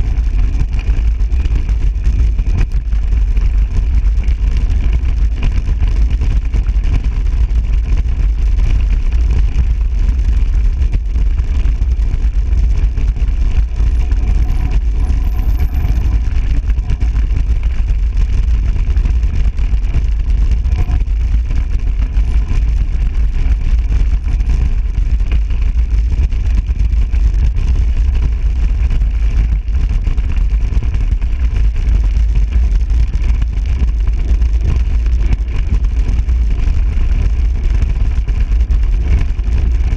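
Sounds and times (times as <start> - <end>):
wind rumble on microphone: 0.0 - 39.9.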